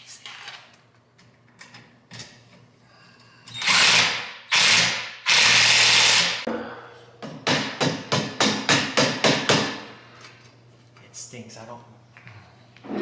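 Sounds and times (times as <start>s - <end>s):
power tool bursts: 3.6s - 6.4s.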